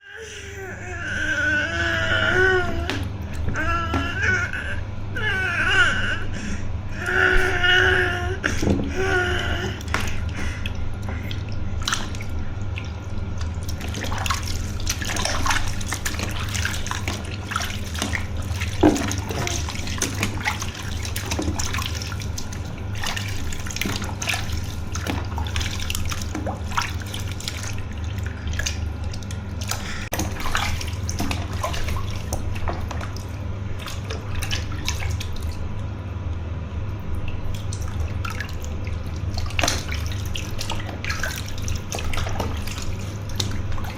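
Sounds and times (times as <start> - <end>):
tap water running into bathtub: 8.6 - 35.9, 37.2 - 43.9.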